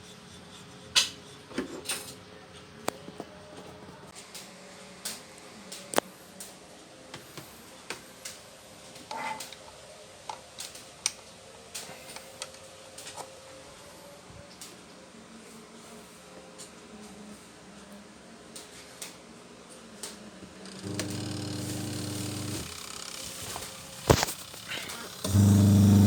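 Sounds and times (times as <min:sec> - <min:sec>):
faint steady hum: 0:25.2 - 0:26.0.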